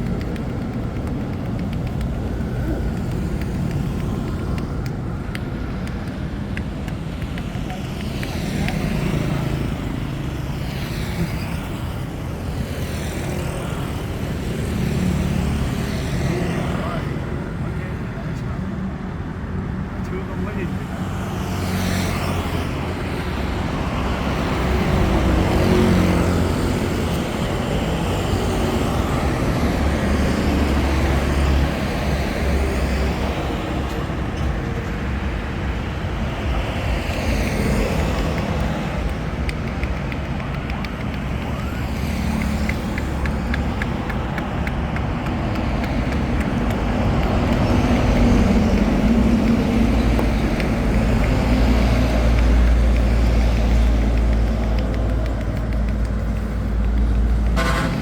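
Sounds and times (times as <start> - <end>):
vehicles passing: 0.0 - 58.0
engines running: 20.1 - 58.0.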